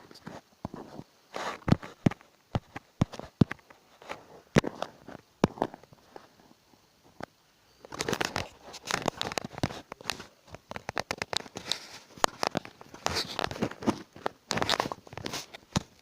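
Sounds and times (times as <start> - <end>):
crinkling and rustling: 0.0 - 16.0.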